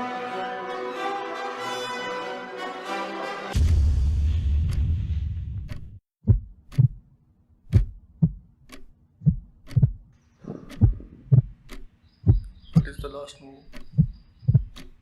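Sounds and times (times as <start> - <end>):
orchestral music: 0.0 - 5.6
heartbeat thumps: 4.6 - 7.1, 7.7 - 8.6, 9.2 - 13.1, 13.8 - 14.9
faint sharp clicks: 13.7 - 15.0.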